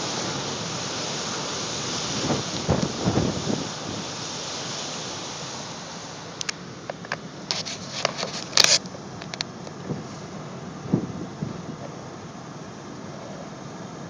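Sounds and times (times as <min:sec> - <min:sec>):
wind buffeting microphone: 0:00.0 - 0:04.9, 0:09.3 - 0:12.2
storm surf: 0:00.0 - 0:14.0.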